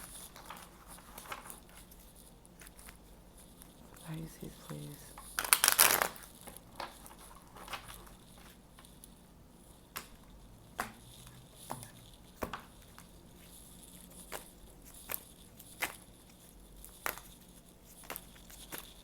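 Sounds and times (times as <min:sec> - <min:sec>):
tarot cards being shuffled: 0:03.7 - 0:09.0, 0:09.9 - 0:19.0.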